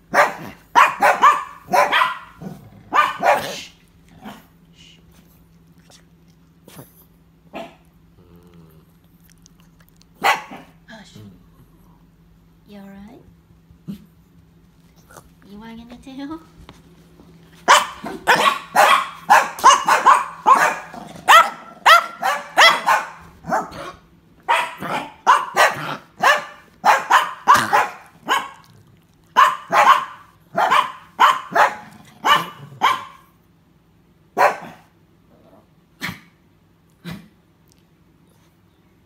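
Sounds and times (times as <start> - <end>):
dog coughing: 27.1 - 28.5.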